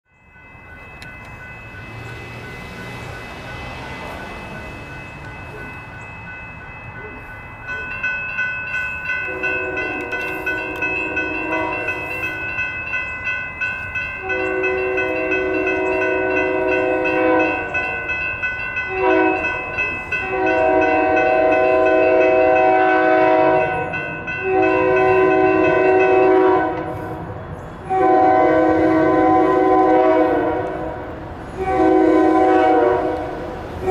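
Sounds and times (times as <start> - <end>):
railroad crossing bells ringing: 0.0 - 33.9
train horn blasts: 9.2 - 12.3, 14.2 - 18.0, 18.9 - 27.0, 27.8 - 33.9.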